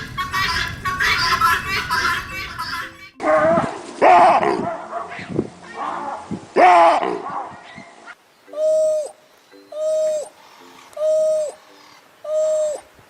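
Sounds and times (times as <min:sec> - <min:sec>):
owl hooting: 0:08.5 - 0:12.9.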